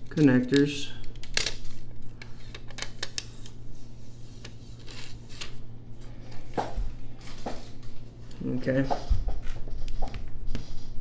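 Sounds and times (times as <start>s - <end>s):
plastic film peeling: 1.0s - 5.6s.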